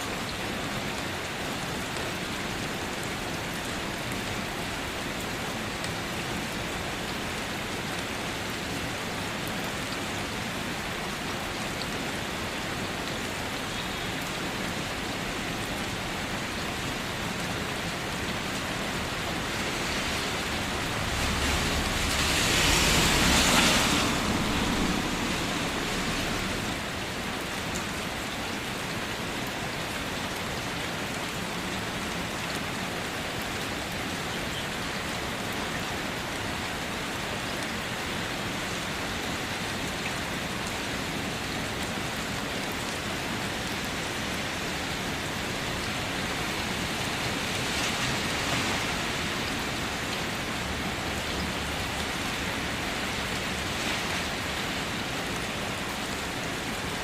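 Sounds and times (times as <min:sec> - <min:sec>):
rain on a car: 0:00.0 - 0:57.0
low rumble: 0:20.2 - 0:26.8.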